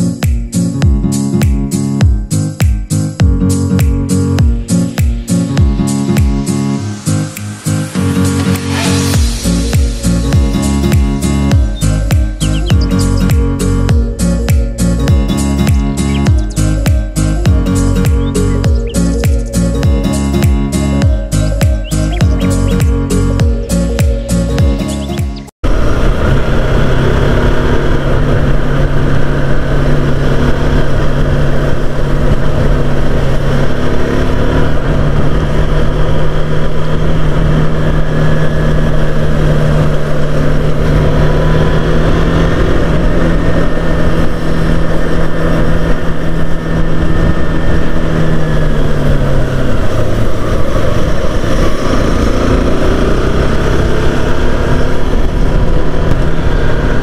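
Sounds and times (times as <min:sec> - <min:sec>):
motorcycle engine running: 0:00.0 - 0:57.0
rushing noise: 0:02.2 - 0:57.0.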